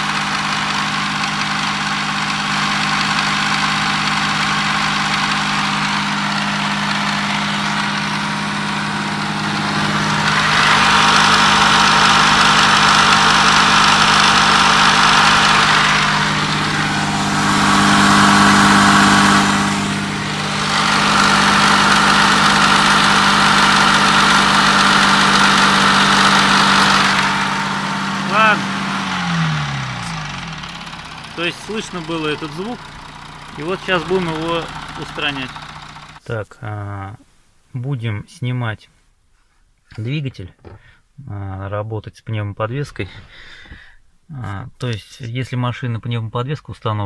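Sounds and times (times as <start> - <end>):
clattering engine knock: 0.0 - 36.2
diesel engine idling: 0.0 - 36.2.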